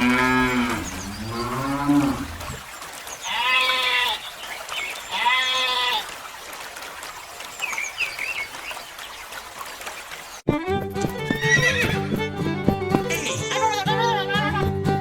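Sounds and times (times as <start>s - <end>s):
music with bowed fiddle tones: 10.5s - 15.0s.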